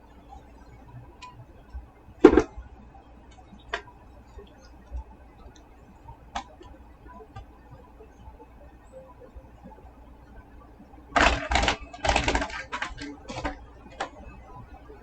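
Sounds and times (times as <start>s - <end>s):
phone and cables clicking on desk: 1.2s - 2.6s, 6.3s - 7.5s, 11.1s - 14.6s.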